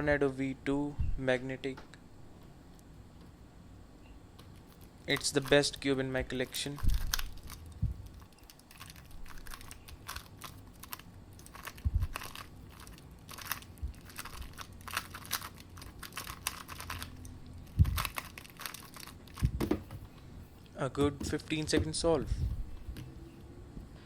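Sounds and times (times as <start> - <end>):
rapid clicking of puzzle cube: 4.4 - 5.6, 6.6 - 19.9
dull thump: 19.4 - 20.1.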